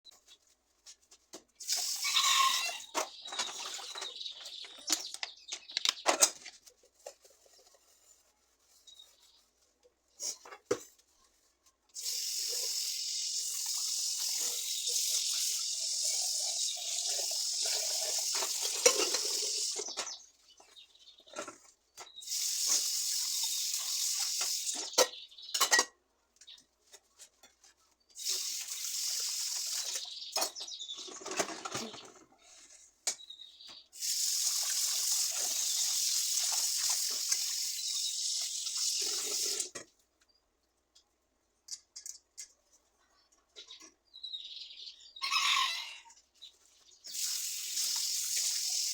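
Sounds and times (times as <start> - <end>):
water running: 12.0 - 20.0, 22.2 - 24.9, 28.2 - 30.1, 34.0 - 39.7, 47.1 - 48.9.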